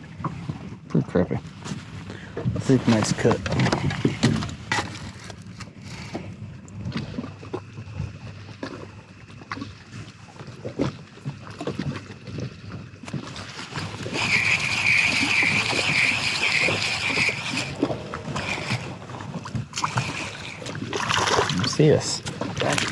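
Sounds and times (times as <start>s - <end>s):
pulsing insect call: 13.8s - 21.5s.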